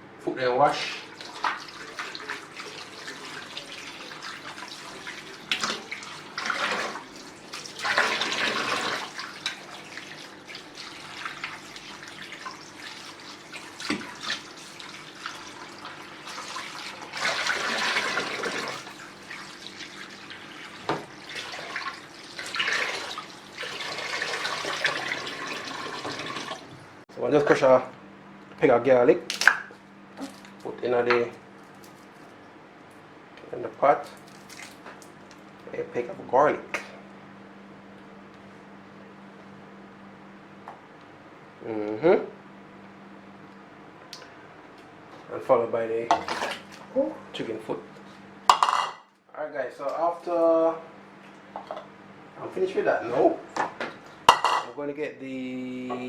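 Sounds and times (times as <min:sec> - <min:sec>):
tap running into sink: 0:20.8 - 0:21.1.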